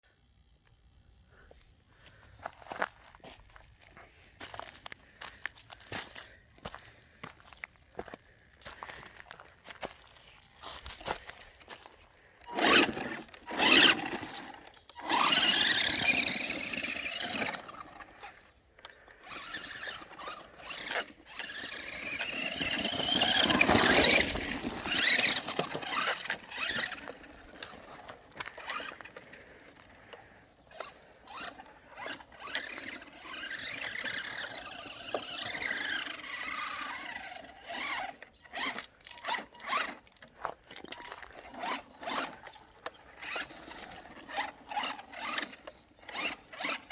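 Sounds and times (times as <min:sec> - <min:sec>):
rc car electric motor whining: 0:12.5 - 0:18.6, 0:19.2 - 0:46.9.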